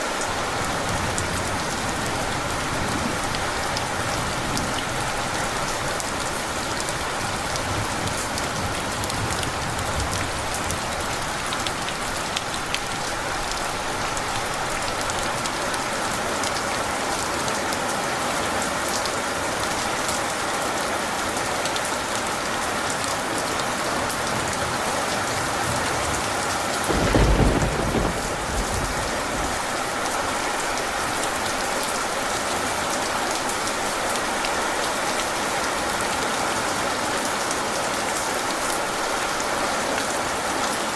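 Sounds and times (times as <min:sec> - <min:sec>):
heavy rain pattering: 0:00.0 - 0:40.9
deep thunder rumble: 0:25.8 - 0:30.6.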